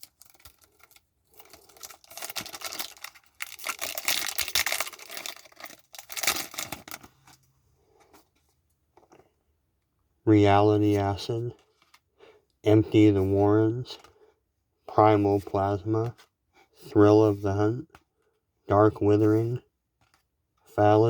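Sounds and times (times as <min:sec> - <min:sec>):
wrapper tearing and crinkling: 0:00.0 - 0:07.4.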